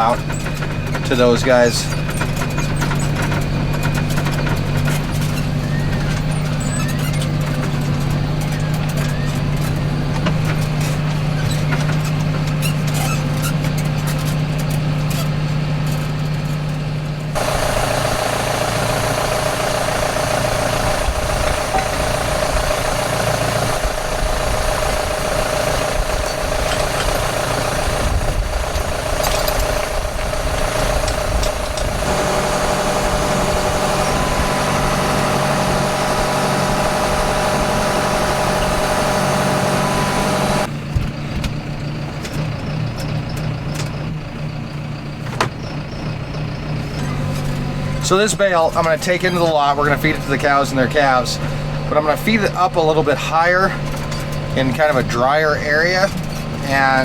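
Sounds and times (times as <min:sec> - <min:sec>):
tractor engine running: 0:00.0 - 0:57.0.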